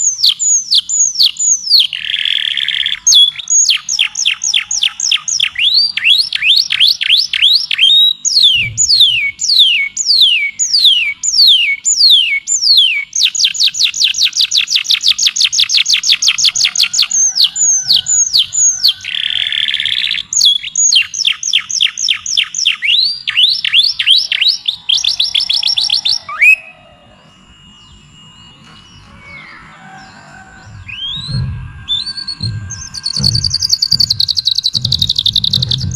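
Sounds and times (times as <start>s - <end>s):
songbird singing: 0.0s - 35.9s
faint steady tone: 23.8s - 35.4s.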